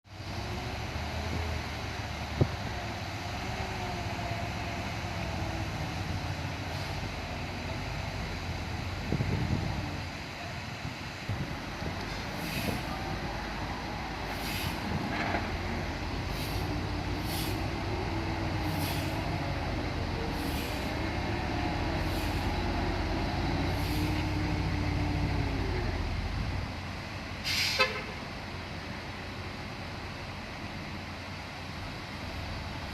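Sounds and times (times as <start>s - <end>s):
heavy diesel engine running: 0.2s - 28.0s
short hissing bursts: 12.3s - 13.0s, 14.3s - 14.9s, 16.3s - 17.8s, 18.6s - 19.4s, 20.4s - 21.0s, 22.0s - 22.6s, 23.7s - 24.2s, 27.4s - 27.9s.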